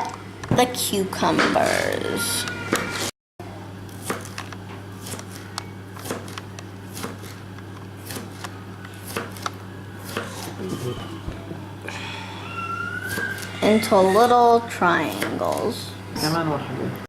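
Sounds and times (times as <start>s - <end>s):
steady low hum: 0.0s - 17.0s
knife cutting on board: 5.0s - 7.4s.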